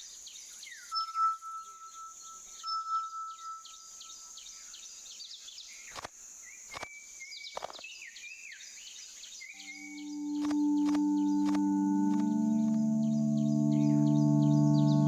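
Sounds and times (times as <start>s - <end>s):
bird chirps: 9.4s - 15.0s
sharp clicks: 10.4s - 12.8s.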